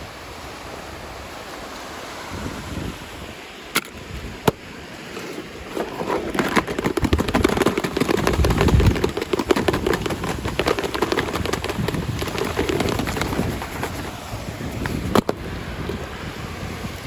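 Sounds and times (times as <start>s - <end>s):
plastic packaging crinkling: 5.7s - 14.2s.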